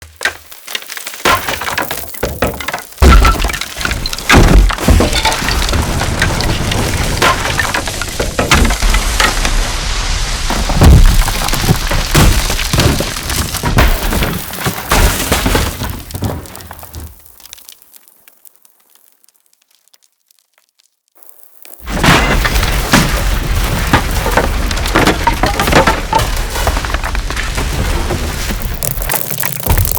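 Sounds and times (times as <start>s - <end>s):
debris crashing down: 0.0s - 19.1s, 21.2s - 29.9s
heavy crash impacts: 3.0s - 17.2s.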